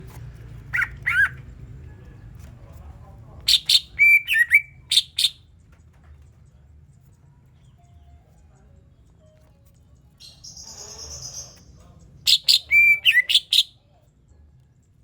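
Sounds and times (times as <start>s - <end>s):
bird chirping and whistling: 3.5s - 5.4s, 10.2s - 11.6s, 12.3s - 13.7s.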